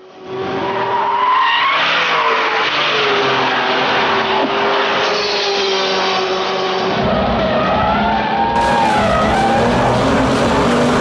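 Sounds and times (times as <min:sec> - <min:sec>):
sports car engine at high speed: 0:02.6 - 0:11.0.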